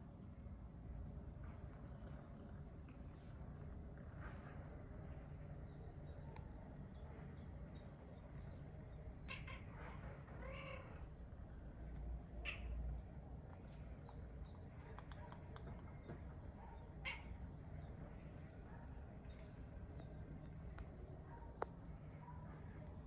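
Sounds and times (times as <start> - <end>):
cat meowing faintly: 9.2 - 11.2, 12.4 - 13.0, 16.9 - 17.6.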